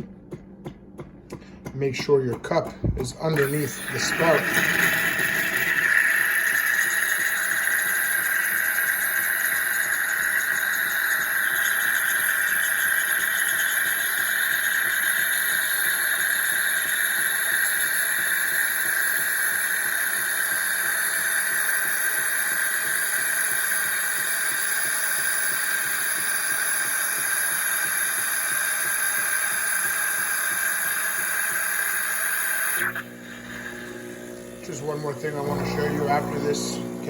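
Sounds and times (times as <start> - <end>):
coffee machine hissing: 2.2 - 37.0.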